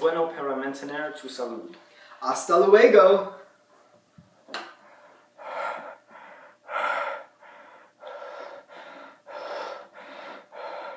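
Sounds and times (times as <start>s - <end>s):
person breathing hard: 4.8s - 10.9s.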